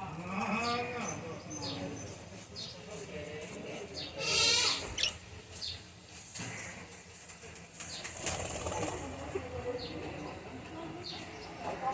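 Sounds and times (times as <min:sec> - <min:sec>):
birds chirping: 0:04.0 - 0:05.9.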